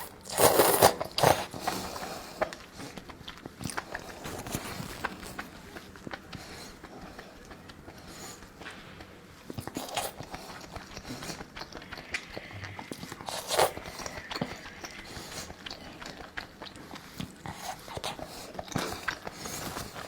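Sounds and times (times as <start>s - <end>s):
person chewing food: 0.0s - 20.0s
wet mouth clicks: 9.6s - 19.3s.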